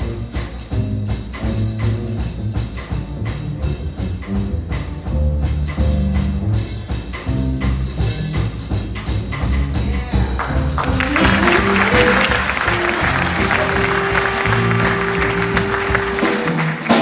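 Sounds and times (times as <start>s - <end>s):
bass line: 0.0s - 17.0s
jazz combo playing: 0.0s - 17.0s
audience applause: 10.3s - 17.0s.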